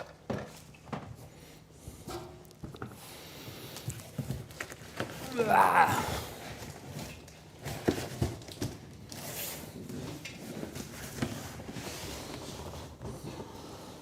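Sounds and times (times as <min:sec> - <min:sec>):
cardboard rustling and rubbing: 0:06.8 - 0:14.0.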